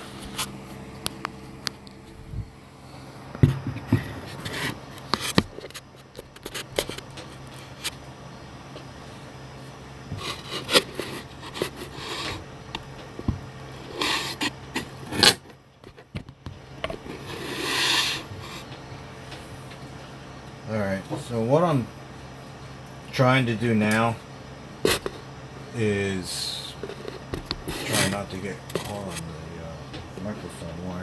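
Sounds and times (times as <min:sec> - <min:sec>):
low steady hum: 0:00.0 - 0:31.0
rubbing noise: 0:10.1 - 0:12.5.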